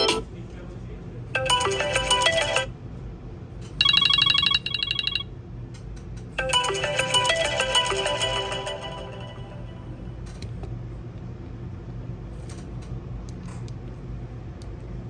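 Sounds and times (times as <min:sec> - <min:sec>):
melodic ringtone chime: 0:00.0 - 0:00.2, 0:01.4 - 0:02.7, 0:03.8 - 0:05.2, 0:06.4 - 0:09.8.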